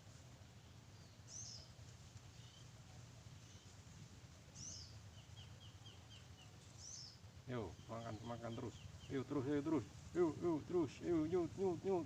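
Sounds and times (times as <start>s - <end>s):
low steady hum: 0.0s - 12.0s
faint bird chirps: 0.9s - 2.8s, 4.6s - 9.5s
bird calling: 4.6s - 12.0s.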